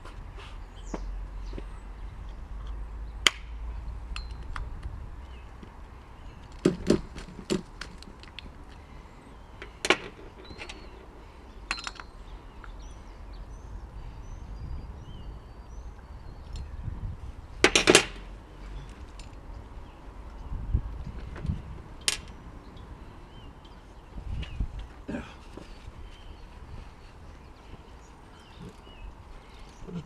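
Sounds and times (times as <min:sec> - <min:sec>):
hand tools clicking and knocking: 0:11.7 - 0:12.1, 0:17.6 - 0:18.2.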